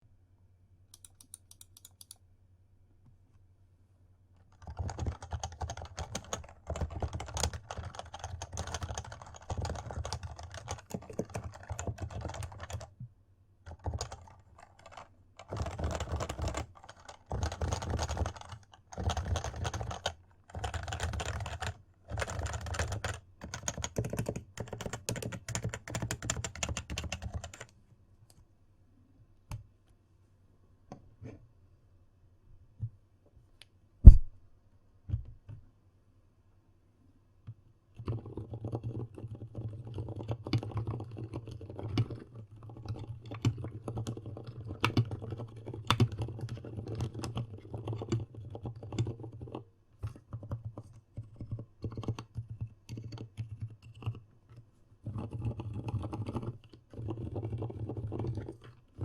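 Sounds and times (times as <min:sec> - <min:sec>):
keyboard typing: 0:04.4 - 0:12.9, 0:13.7 - 0:27.7, 0:38.0 - 0:54.2, 0:55.1 - 0:59.0.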